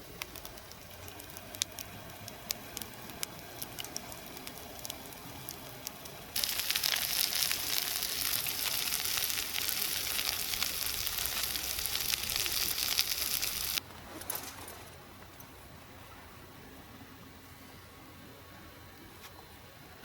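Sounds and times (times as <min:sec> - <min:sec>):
faint crackling: 0:00.0 - 0:15.0
food sizzling in a pan: 0:00.4 - 0:13.8.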